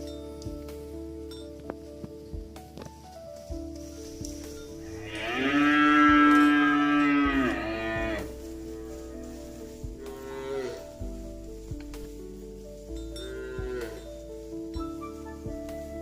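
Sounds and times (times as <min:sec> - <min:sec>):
cow mooing: 0:04.9 - 0:09.4, 0:10.0 - 0:11.0, 0:13.2 - 0:14.1.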